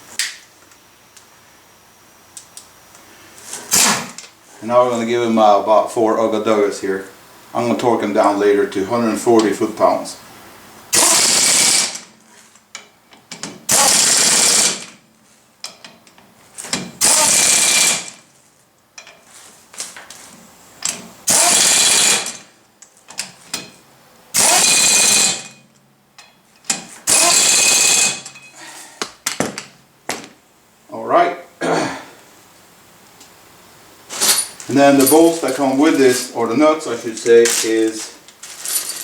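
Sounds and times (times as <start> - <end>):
impact wrench hammering: 11.0 - 12.0, 13.4 - 15.0, 16.7 - 18.1, 20.9 - 22.4, 24.4 - 25.6, 26.2 - 28.5.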